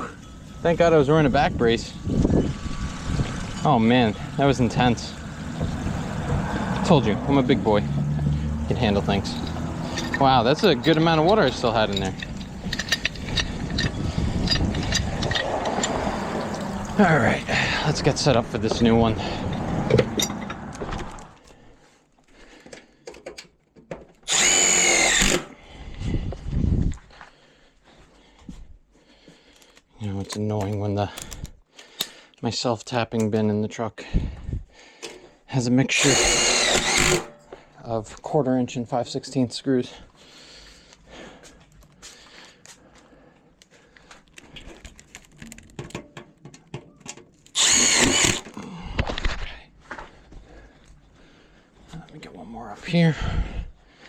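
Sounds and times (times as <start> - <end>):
power drill whining: 1.9 - 20.8, 24.2 - 25.6, 36.0 - 37.4, 47.5 - 48.6
screws clicking and rattling: 8.7 - 16.6, 24.2 - 25.5, 30.3 - 32.1, 36.0 - 37.4, 47.4 - 48.6
power drill motor whine: 24.3 - 25.6, 36.0 - 37.3, 47.6 - 48.6.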